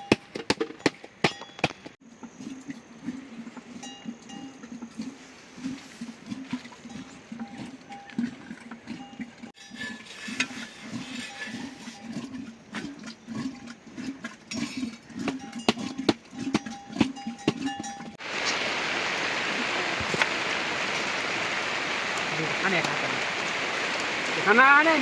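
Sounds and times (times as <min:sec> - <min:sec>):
heavy rain falling: 0:18.2 - 0:25.0.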